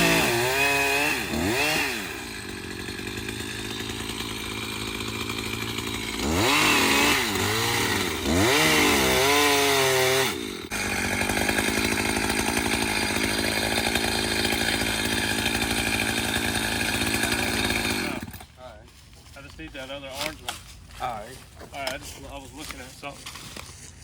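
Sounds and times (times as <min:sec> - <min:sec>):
chainsaw engine revving: 0:00.0 - 0:18.6.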